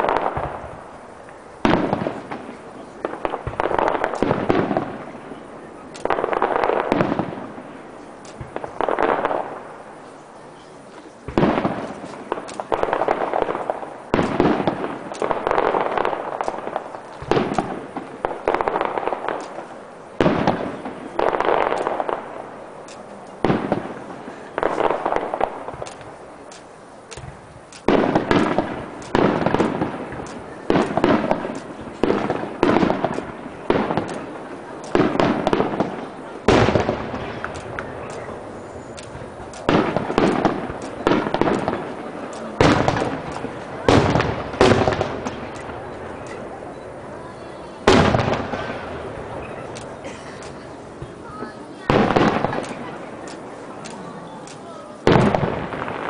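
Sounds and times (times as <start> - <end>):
firework shells bursting: 0.0 - 10.1, 10.9 - 56.0
fireworks crackling: 0.0 - 56.0.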